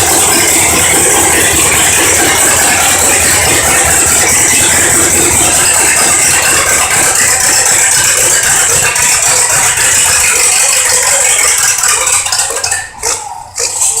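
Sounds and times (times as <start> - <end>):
tractor engine running hard: 0.0 - 14.0.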